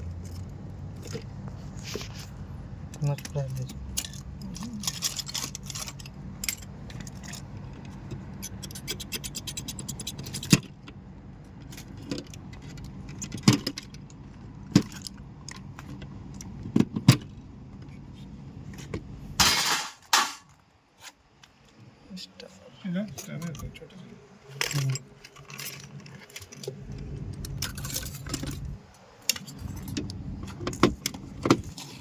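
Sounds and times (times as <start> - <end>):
metal tools clinking and rattling: 0.1 - 10.8, 19.4 - 20.6, 24.4 - 32.0.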